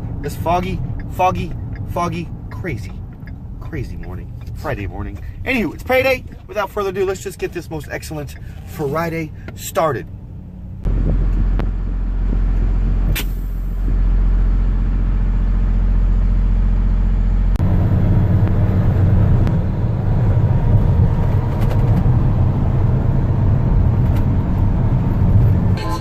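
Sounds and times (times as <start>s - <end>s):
car engine and road rumble: 0.0s - 26.0s.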